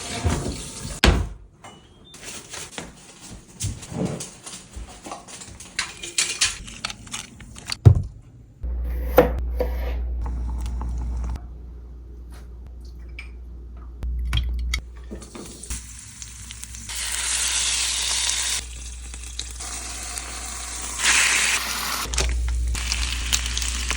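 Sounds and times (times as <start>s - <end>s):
steady low hum: 8.0s - 15.1s.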